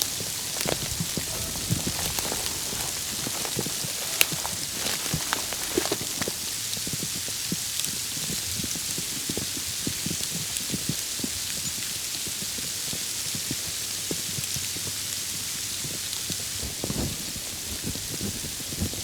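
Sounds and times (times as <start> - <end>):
snow and sleet hissing: 0.0 - 6.6
small ticks of sleet: 0.0 - 6.8.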